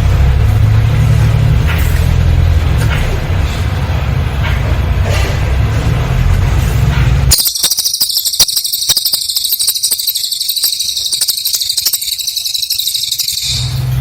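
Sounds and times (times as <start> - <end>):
bird buzzing trill: 7.3 - 13.8.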